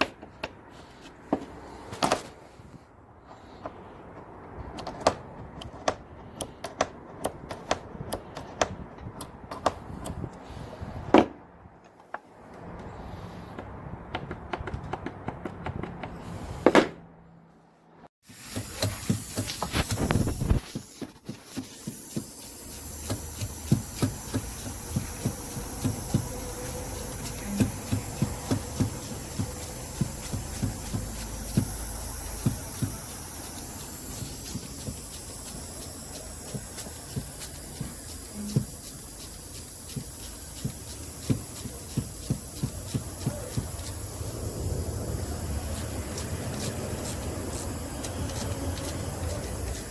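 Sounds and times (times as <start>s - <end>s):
engine running with hiss: 18.2s - 49.9s
engine valve ticking: 18.2s - 49.9s.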